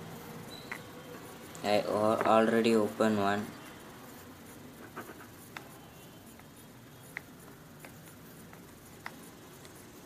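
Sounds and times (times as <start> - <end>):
steady hiss: 0.0 - 10.0.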